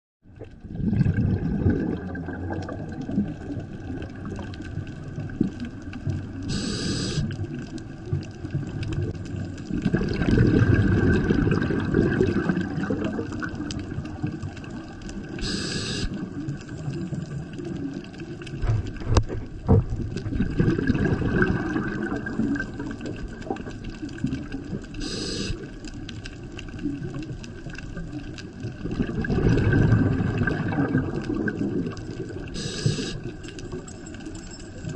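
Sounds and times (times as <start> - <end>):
bubbling exhale underwater: 0.3 - 26.1, 26.8 - 33.8
regulator breathing hiss: 6.5 - 7.3, 15.4 - 16.2, 25.0 - 25.6, 32.5 - 33.3.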